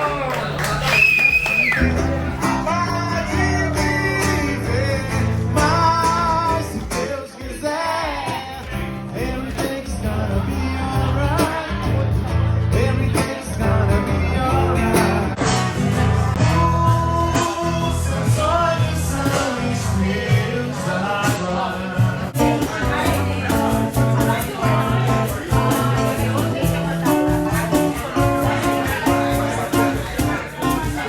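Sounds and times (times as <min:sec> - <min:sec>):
bass line: 0:00.0 - 0:31.0
guitar: 0:00.0 - 0:31.0
man singing: 0:01.9 - 0:31.0.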